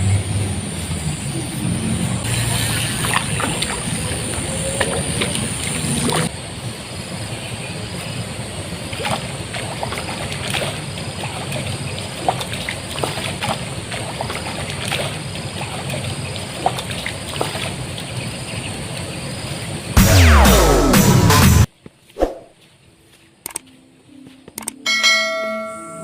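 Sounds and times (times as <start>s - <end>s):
river water trickling: 0.7s - 6.3s, 7.1s - 20.0s
small sharp splashes: 2.3s - 6.3s, 8.9s - 18.3s.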